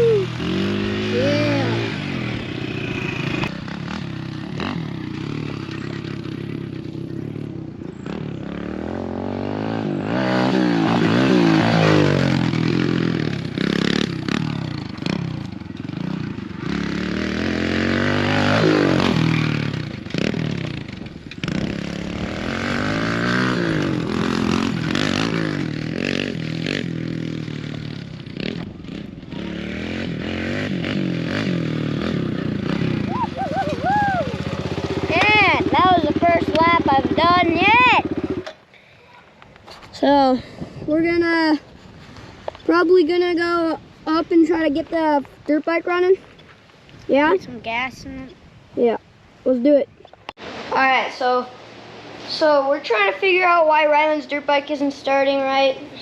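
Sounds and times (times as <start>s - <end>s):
quad engine revving: 0.0s - 38.6s.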